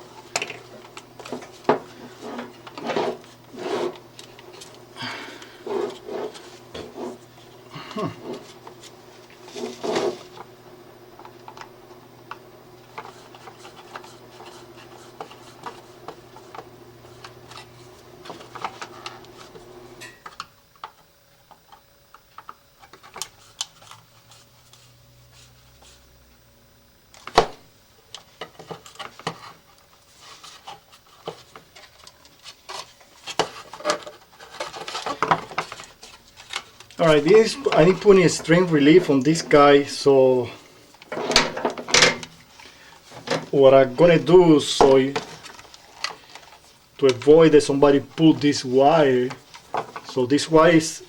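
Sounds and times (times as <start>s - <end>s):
hands handling wires and parts: 0.0s - 7.4s, 11.1s - 19.6s, 28.1s - 39.6s, 43.0s - 50.8s
steady low hum: 0.0s - 51.0s.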